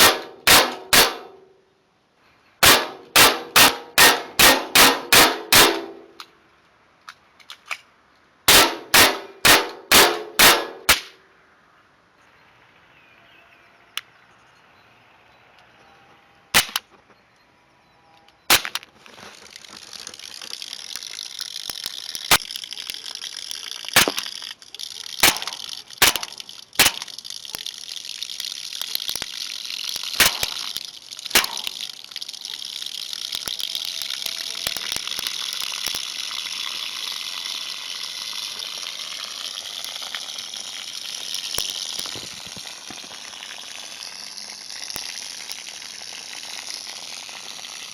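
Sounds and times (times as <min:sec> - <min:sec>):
airsoft pistol shots: 0:00.0 - 0:01.4, 0:02.6 - 0:06.0, 0:08.5 - 0:11.1, 0:16.6 - 0:16.8, 0:24.0 - 0:24.2, 0:25.2 - 0:27.1, 0:30.2 - 0:30.7, 0:31.3 - 0:31.8
steady gas hissing: 0:34.9 - 0:47.9.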